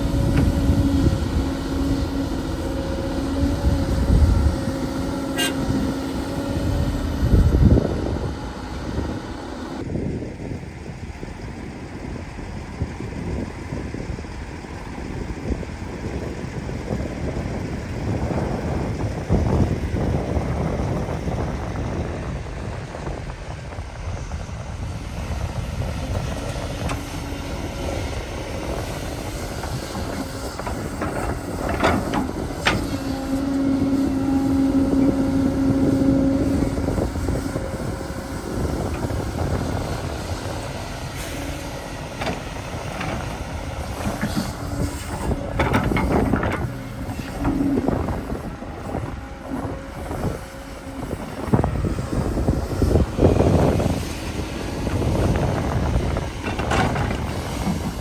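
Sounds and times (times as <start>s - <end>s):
heavy machinery engine rumble: 0.0s - 58.0s
knocks and clanks: 28.7s - 37.6s, 42.2s - 48.4s, 54.9s - 58.0s.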